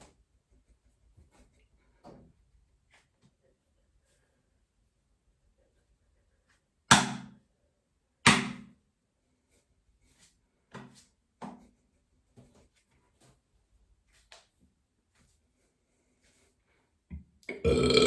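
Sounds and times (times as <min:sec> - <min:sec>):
man burping loudly: 0:17.5 - 0:18.0.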